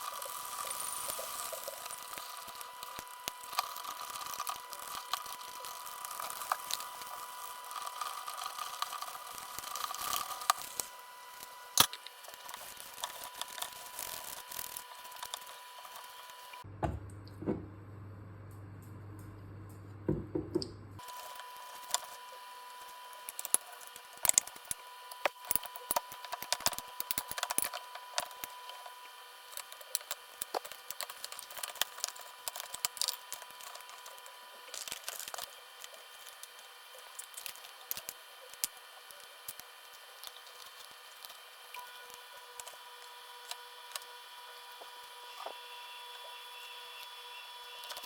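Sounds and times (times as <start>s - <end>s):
small clicks and squishy handling: 23.2s - 44.1s
faint steady high tone: 41.7s - 48.0s.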